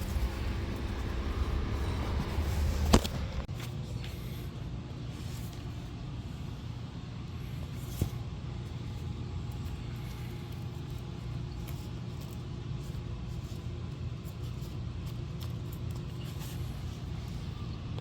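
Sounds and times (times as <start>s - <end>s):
vehicle engine rumble: 0.0s - 4.1s.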